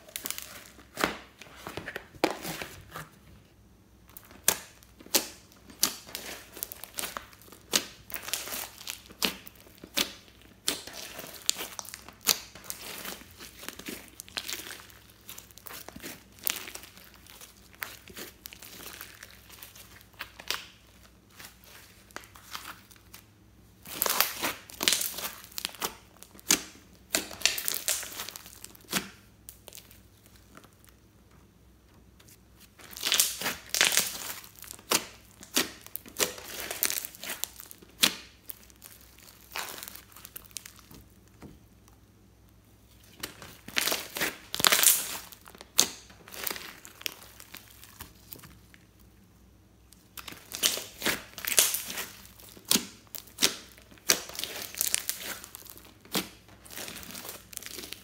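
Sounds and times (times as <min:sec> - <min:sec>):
slime squeezed wet crackling: 0:50.1 - 0:58.0.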